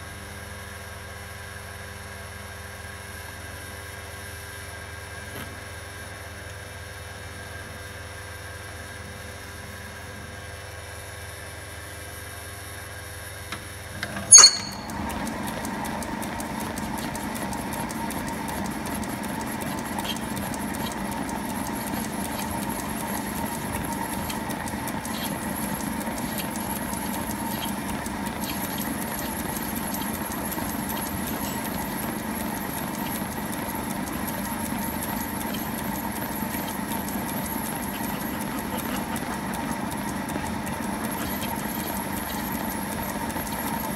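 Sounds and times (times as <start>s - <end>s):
machine tool running: 14.1s - 43.9s
thin high whine: 14.2s - 15.0s
sharp metal clank: 14.3s - 14.9s.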